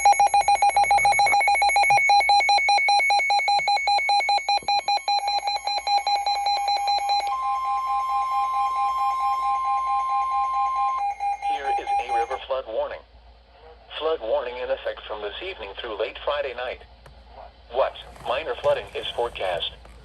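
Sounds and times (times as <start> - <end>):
steady warning alarm tone: 0.0 - 12.4
weather radio alarm beeping: 0.0 - 12.4.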